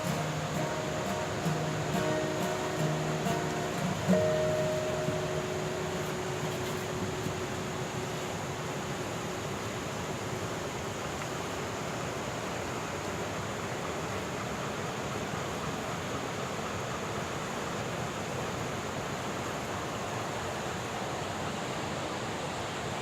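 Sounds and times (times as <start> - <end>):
steady rushing noise: 0.0 - 11.0.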